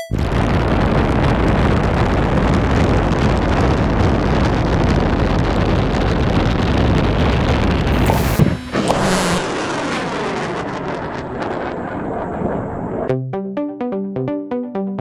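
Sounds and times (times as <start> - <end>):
rocket launch roar: 7.9 - 13.0.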